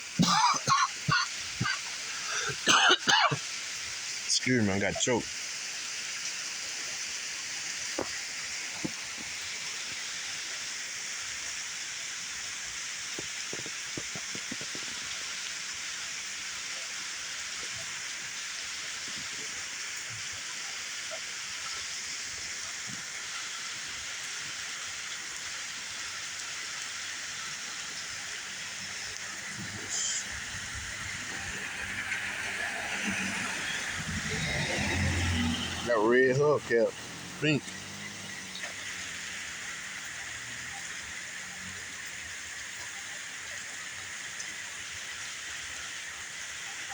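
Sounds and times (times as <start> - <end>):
steady rain: 0.0 - 46.9
car approaching: 27.9 - 44.6.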